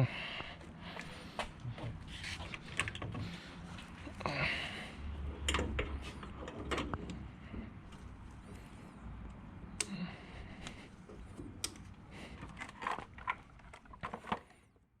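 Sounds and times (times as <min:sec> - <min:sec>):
parts clicking and knocking: 0:01.8 - 0:04.0, 0:05.3 - 0:10.0, 0:10.6 - 0:14.7.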